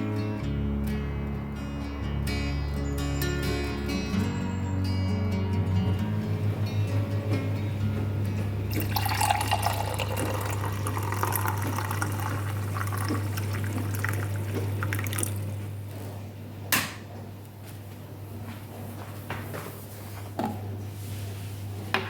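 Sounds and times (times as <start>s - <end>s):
tap water splashing into container: 8.7s - 15.5s
sharp click or knock: 16.7s - 17.1s.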